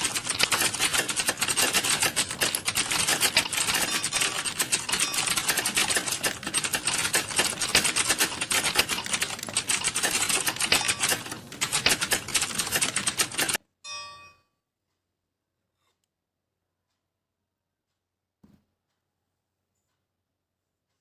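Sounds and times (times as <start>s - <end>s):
keyboard typing: 0.0s - 13.6s.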